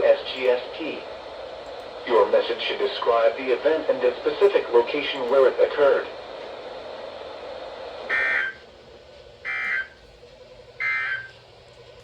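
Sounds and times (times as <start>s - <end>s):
radio hiss: 0.0s - 8.7s.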